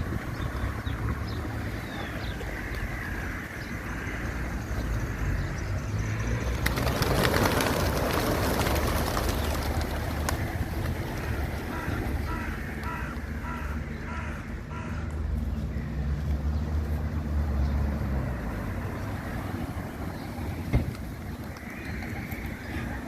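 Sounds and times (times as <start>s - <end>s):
pigeons flapping wings: 6.4s - 13.2s, 20.4s - 23.0s.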